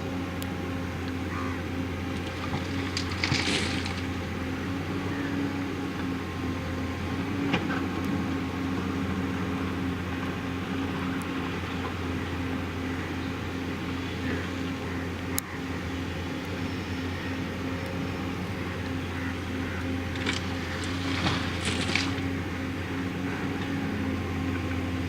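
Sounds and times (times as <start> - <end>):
diesel engine running: 0.0 - 25.0.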